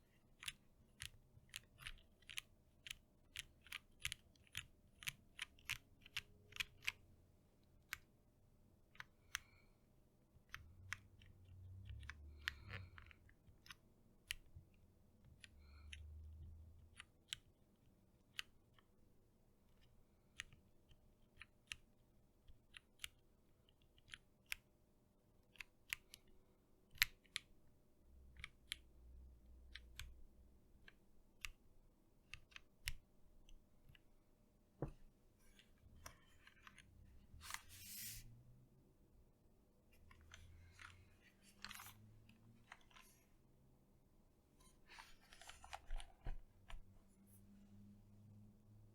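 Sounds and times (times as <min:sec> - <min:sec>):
mechanical keyboard typing: 0:00.4 - 0:07.0.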